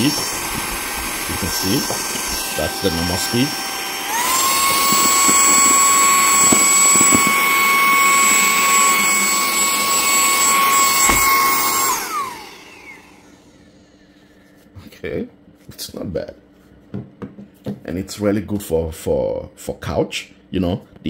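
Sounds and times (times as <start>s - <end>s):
handheld vacuum cleaner whining: 0.0s - 13.8s.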